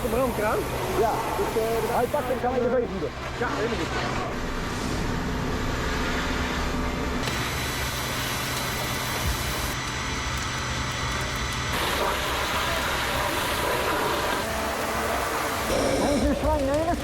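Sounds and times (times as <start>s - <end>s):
fire engine motor and pump: 0.0s - 17.0s.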